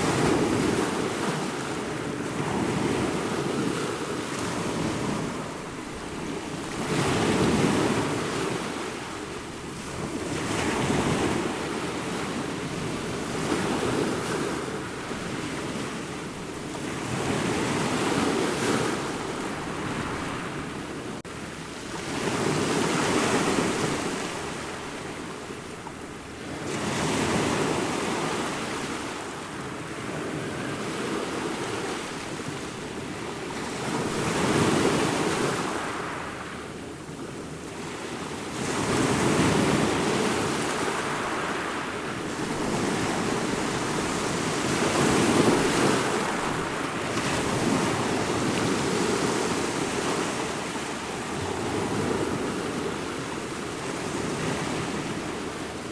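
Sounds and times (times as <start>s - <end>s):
waves breaking: 37.8s - 55.9s.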